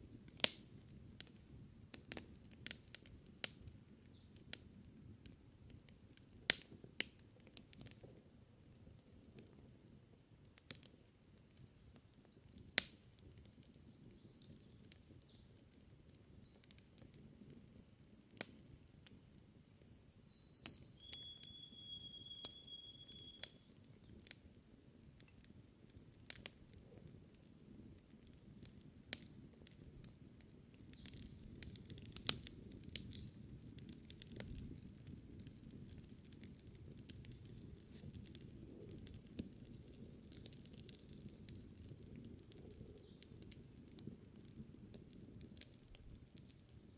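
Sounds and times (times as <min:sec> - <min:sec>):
campfire crackling and popping: 0:00.0 - 0:46.9
birds chirping: 0:11.3 - 0:13.4, 0:39.1 - 0:40.4
bird whistled note: 0:19.4 - 0:23.4.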